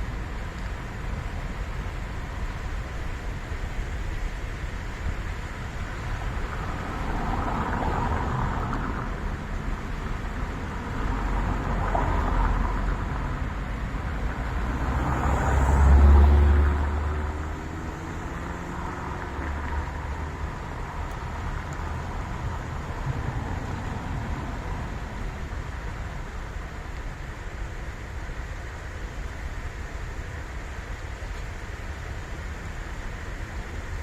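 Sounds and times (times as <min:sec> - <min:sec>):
deep engine rumble: 0:00.0 - 0:28.0
background traffic noise: 0:00.0 - 0:34.0
vehicles passing: 0:00.0 - 0:34.0.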